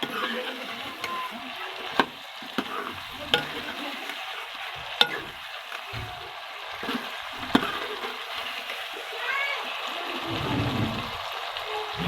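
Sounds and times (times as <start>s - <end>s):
utensil clacking against pan: 0.0s - 8.8s
food sizzling in a pan: 0.0s - 12.0s.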